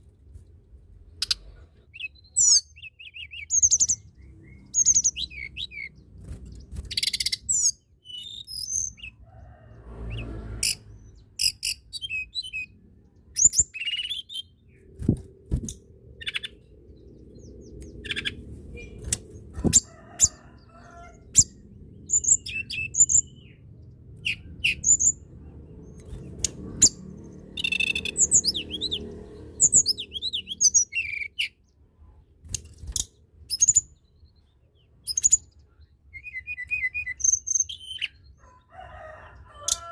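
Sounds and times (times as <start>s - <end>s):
songbird chirping and trilling: 0.0s - 39.9s.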